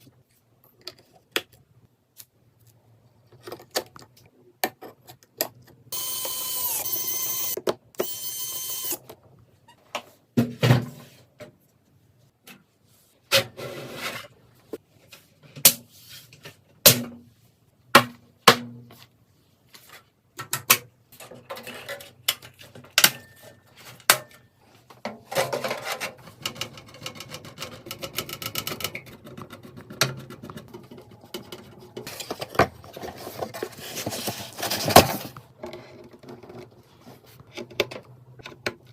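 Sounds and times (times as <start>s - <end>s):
small power-tool motor whirring: 5.9s - 9.0s.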